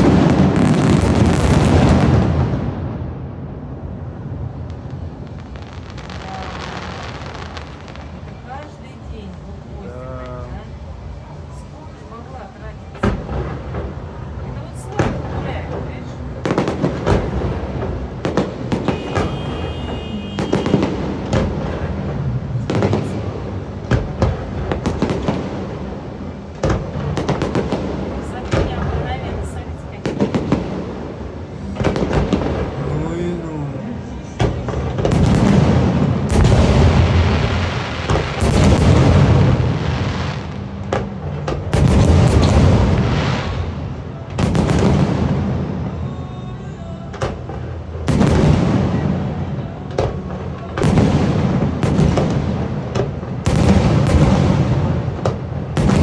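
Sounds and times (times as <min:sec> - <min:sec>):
sharp firework cracks: 0:00.0 - 0:02.9, 0:16.4 - 0:21.9, 0:34.4 - 0:43.8, 0:44.4 - 0:45.8, 0:50.8 - 0:56.0
fireworks crackling and banging: 0:00.0 - 0:10.3, 0:11.9 - 0:46.2, 0:47.1 - 0:56.0.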